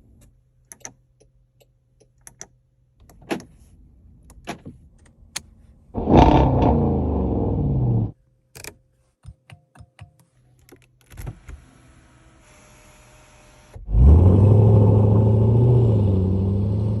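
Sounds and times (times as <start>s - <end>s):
car engine revving and idling: 6.0s - 8.2s, 13.8s - 17.0s.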